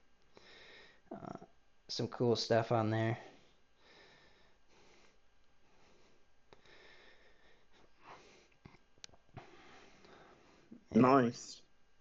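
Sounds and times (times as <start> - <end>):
soft breath-like noises: 0.3 - 1.6, 3.2 - 10.9.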